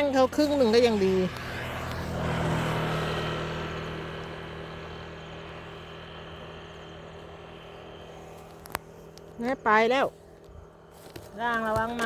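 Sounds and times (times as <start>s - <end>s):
vehicle passing: 0.0s - 9.2s
low engine hum: 0.0s - 12.0s.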